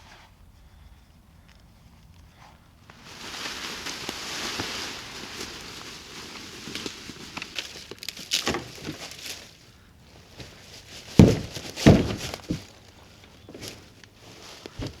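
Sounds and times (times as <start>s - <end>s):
carcass dragged rustling: 2.9s - 15.0s
heavy thuds: 10.4s - 12.8s, 14.7s - 15.0s.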